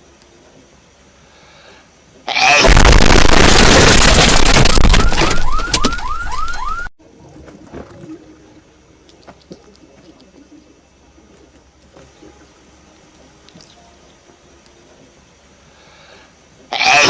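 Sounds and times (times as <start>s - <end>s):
distorted explosion sound effect: 2.5s - 6.2s.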